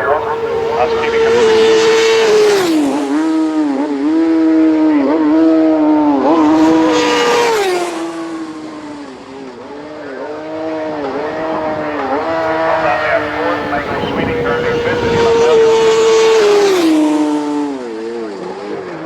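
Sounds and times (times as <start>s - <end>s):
racing motorcycle engines: 0.0s - 19.0s.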